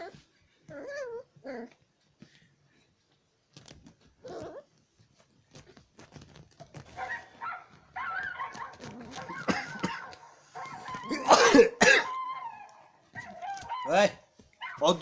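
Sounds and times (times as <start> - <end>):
dog whining and whimpering: 0.0 - 1.8, 4.2 - 4.7, 8.0 - 11.4, 12.0 - 14.8
small clicks and rustles: 0.0 - 11.1, 12.6 - 15.0.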